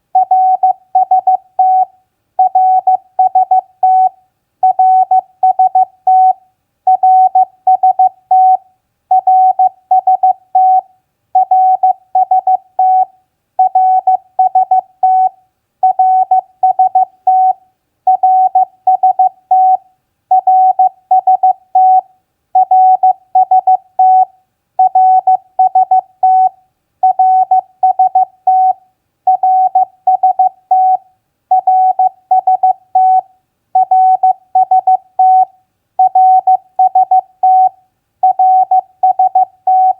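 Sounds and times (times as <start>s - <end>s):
morse code beeps: 33.8s - 39.9s.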